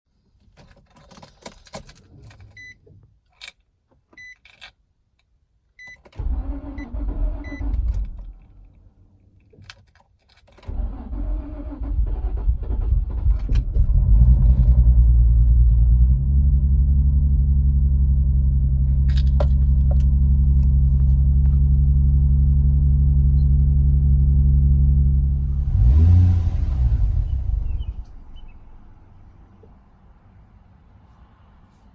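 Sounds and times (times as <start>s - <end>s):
keys rattling: 0.4s - 2.7s, 3.3s - 4.8s, 9.4s - 10.7s, 19.0s - 21.2s
starter cranking engine: 10.7s - 14.0s
car engine idling: 16.3s - 30.0s.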